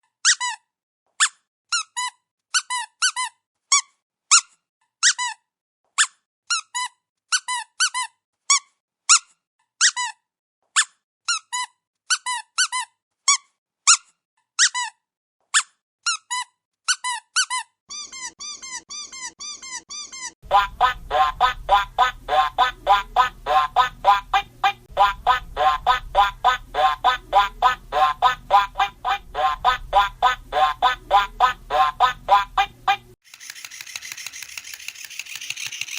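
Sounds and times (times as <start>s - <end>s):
squeaky dog toy squeaking: 0.2s - 20.4s.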